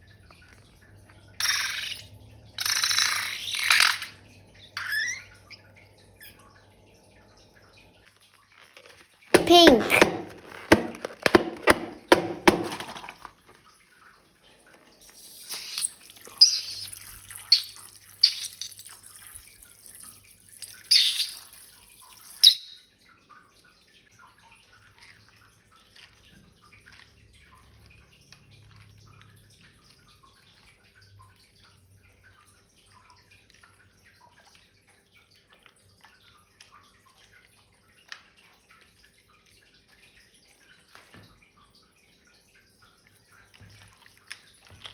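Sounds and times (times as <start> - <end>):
slime squelching: 8.6 - 13.5, 15.0 - 22.4.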